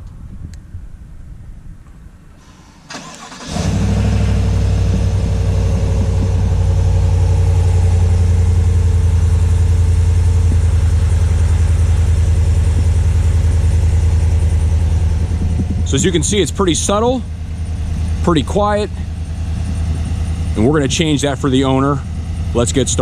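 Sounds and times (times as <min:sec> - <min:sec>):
engine cranking: 0:02.4 - 0:23.0
engine idling: 0:02.4 - 0:23.0.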